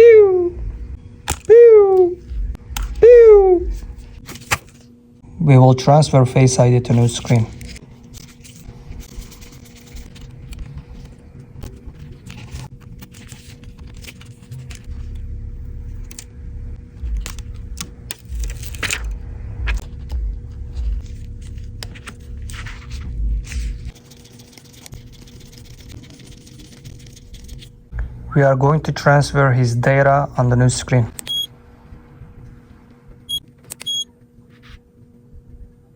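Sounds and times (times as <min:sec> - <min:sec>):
low rumble: 0:00.0 - 0:04.2, 0:14.6 - 0:23.9, 0:27.8 - 0:28.6, 0:31.5 - 0:33.3
faint hum: 0:00.0 - 0:35.9.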